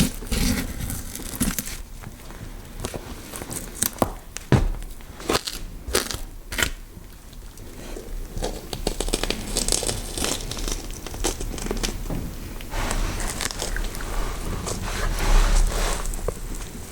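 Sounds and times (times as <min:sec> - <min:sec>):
flesh crunching and tearing: 0:05.2 - 0:06.8, 0:08.4 - 0:11.9.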